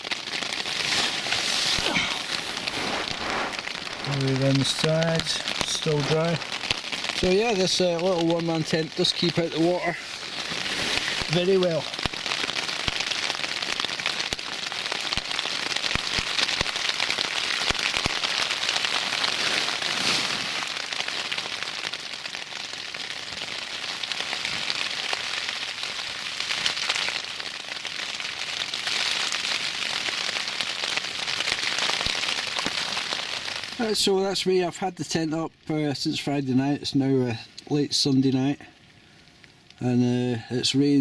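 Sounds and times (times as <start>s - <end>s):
rain drumming on tent: 0.0s - 41.0s.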